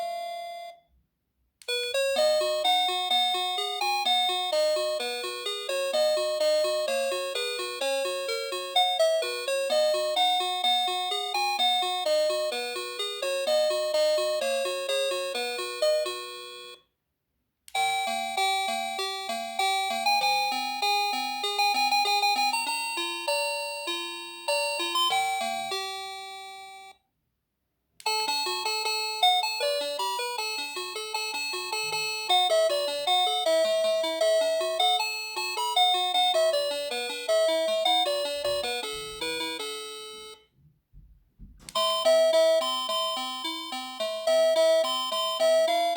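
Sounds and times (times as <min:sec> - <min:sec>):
electronic doorbell chime melody: 0:00.0 - 0:00.9, 0:01.7 - 0:16.9, 0:17.8 - 0:27.0, 0:28.1 - 0:40.5, 0:41.7 - 0:45.9.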